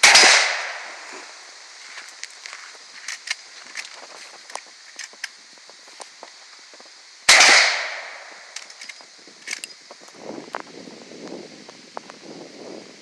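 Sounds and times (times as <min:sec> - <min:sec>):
rifle gunshot: 0:00.0 - 0:01.0, 0:07.3 - 0:08.4
handling clicks and rustles: 0:01.9 - 0:07.0, 0:08.5 - 0:10.7.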